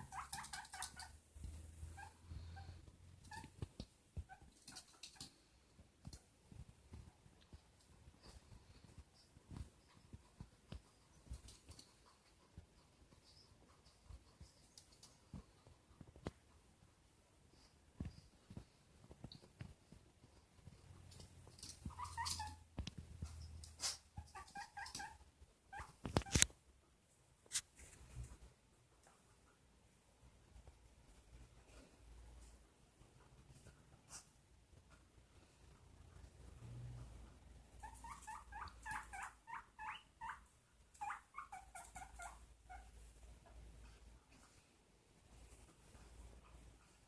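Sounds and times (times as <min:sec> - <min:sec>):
guinea pig squeaking: 0:00.0 - 0:05.3, 0:21.1 - 0:26.6, 0:37.7 - 0:43.3.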